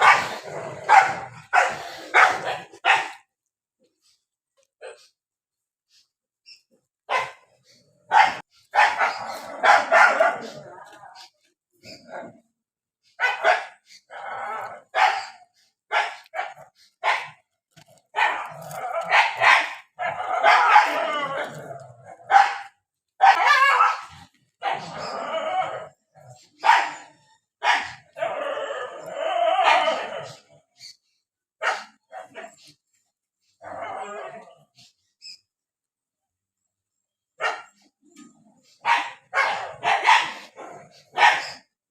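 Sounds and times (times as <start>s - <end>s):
dogs barking: 0.0s - 3.3s, 7.1s - 10.8s, 13.2s - 14.0s, 14.8s - 17.5s, 18.1s - 25.2s, 26.2s - 28.5s, 29.6s - 30.4s, 31.6s - 32.6s, 37.4s - 37.9s, 38.8s - 41.7s.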